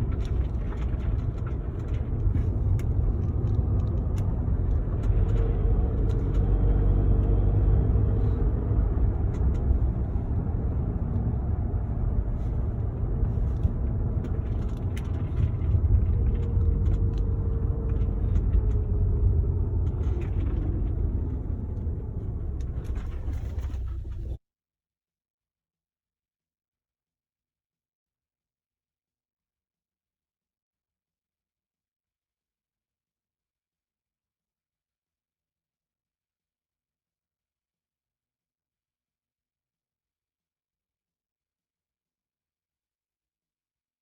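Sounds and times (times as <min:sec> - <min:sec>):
car driving rumble: 0:00.0 - 0:24.4.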